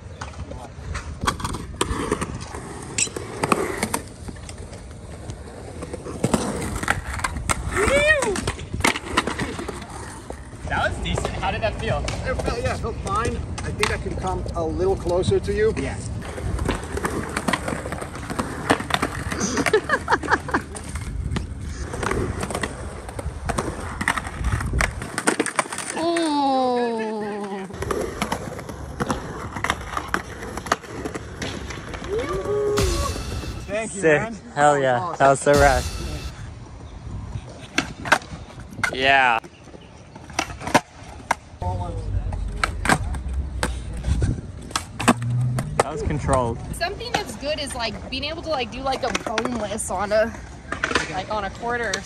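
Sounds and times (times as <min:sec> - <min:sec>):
skateboard clacking on ground: 0:00.0 - 0:19.9, 0:20.6 - 0:33.1, 0:42.2 - 0:52.0
skateboard wheels rolling on concrete: 0:00.0 - 0:35.6, 0:36.5 - 0:52.0
skateboard screeching scrape: 0:01.6 - 0:04.2, 0:05.0 - 0:10.5.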